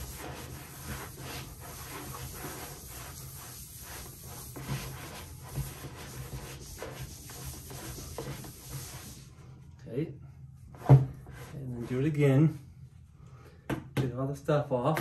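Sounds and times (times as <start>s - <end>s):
abrasive pad sanding bowling ball: 0.0s - 9.3s.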